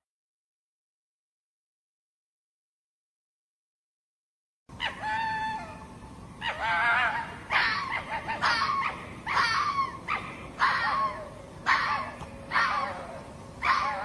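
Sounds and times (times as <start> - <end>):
fox calling: 4.8 - 14.0.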